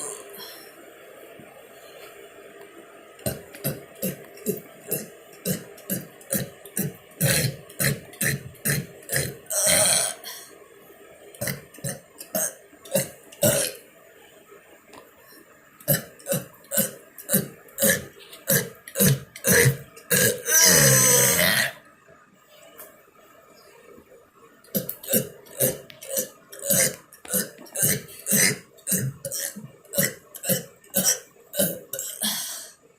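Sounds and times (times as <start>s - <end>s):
man burping: 3.3s - 10.3s, 15.8s - 21.8s, 24.7s - 32.6s.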